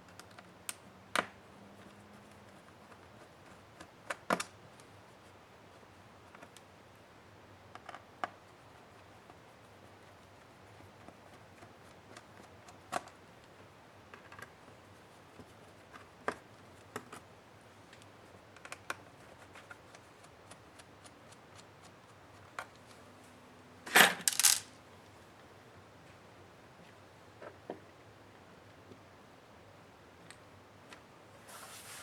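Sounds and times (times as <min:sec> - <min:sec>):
hard parts clattering: 0:23.9 - 0:24.7.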